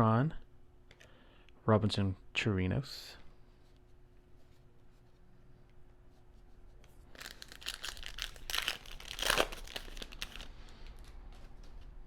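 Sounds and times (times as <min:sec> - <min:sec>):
foil wrapper crinkling and tearing: 0:07.0 - 0:11.1.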